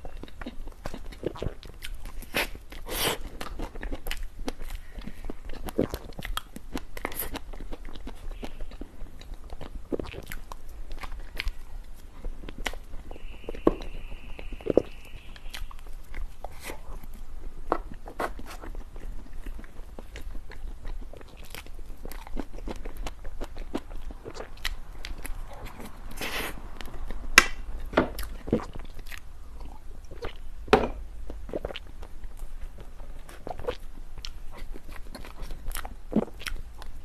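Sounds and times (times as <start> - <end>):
person biting and chewing: 0.1 - 14.0, 14.6 - 30.5, 31.2 - 37.0.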